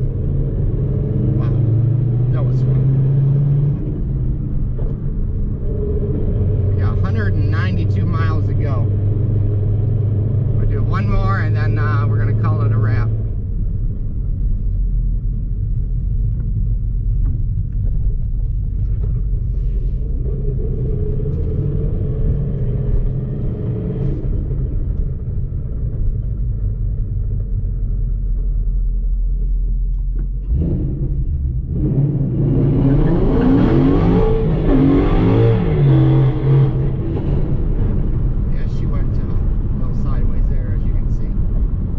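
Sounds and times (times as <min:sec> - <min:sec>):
car engine revving: 0:00.0 - 0:13.7, 0:30.2 - 0:41.9
car engine idling: 0:36.9 - 0:41.9.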